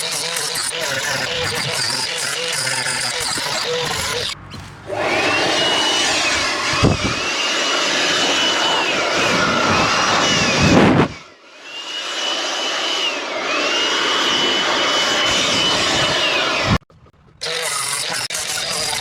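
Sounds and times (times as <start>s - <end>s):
chainsaw running at high revs: 0.0s - 10.6s, 17.4s - 19.0s.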